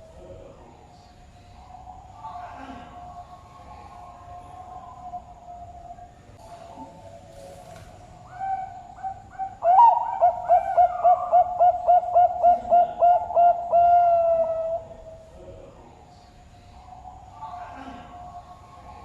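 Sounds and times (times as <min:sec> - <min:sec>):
dove cooing: 0:01.5 - 0:15.8.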